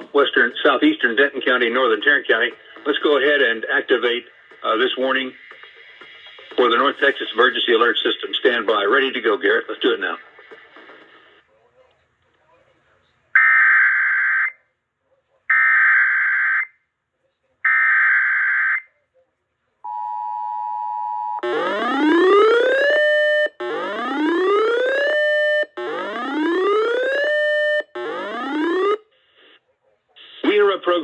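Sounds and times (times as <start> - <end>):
rising whooping siren sweeps: 21.4 - 29.0.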